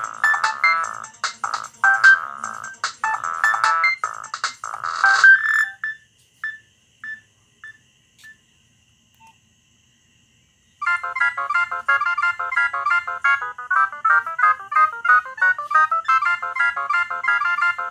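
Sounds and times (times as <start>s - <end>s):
repeating electronic ringtone note: 0.0s - 6.0s, 10.8s - 17.9s
bright electronic ringtone notes: 0.0s - 7.2s, 10.8s - 17.9s.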